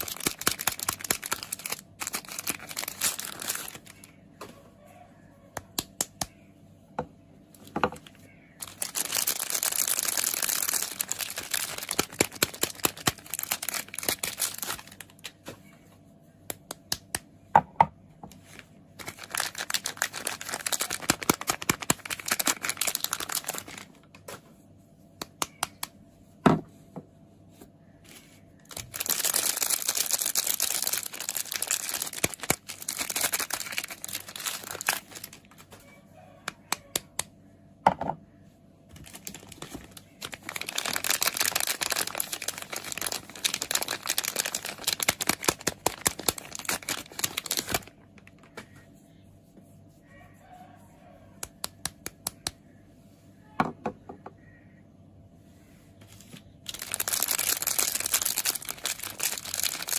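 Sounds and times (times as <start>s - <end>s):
wrapper crinkling and tearing: 0.0s - 4.1s, 8.6s - 15.4s, 18.4s - 24.2s, 28.6s - 35.8s, 38.9s - 48.6s, 56.6s - 59.9s.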